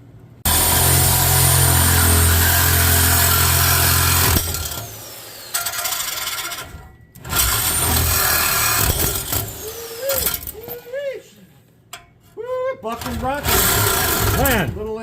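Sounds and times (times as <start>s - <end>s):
reciprocating saw cutting metal pipe: 0.5s - 10.8s, 13.2s - 14.7s.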